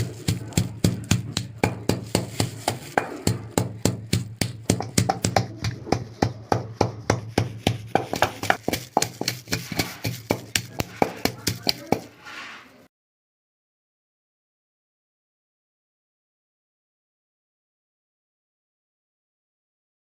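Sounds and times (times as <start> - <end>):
knife chopping on cutting board: 0.0 - 12.1.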